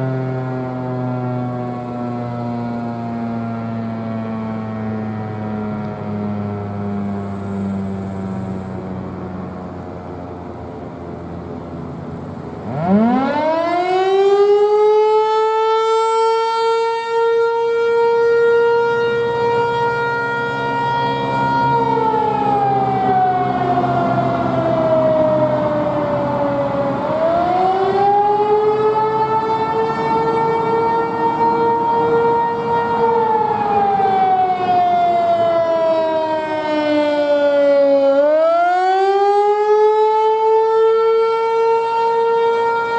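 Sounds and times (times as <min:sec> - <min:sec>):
outdoor warning siren: 0:00.0 - 0:42.9.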